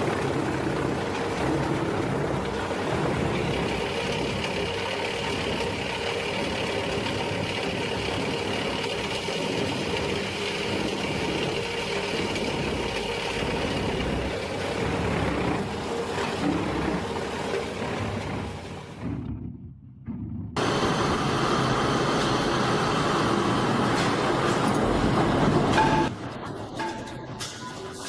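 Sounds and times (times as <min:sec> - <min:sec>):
heavy machine engine running: 0:00.0 - 0:27.4
steady whine: 0:20.6 - 0:27.4.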